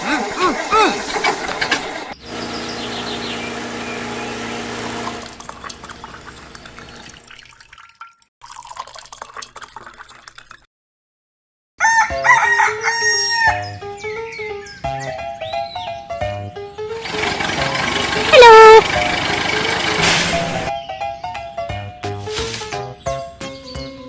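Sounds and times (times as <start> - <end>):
rooster crowing: 11.8 - 13.7.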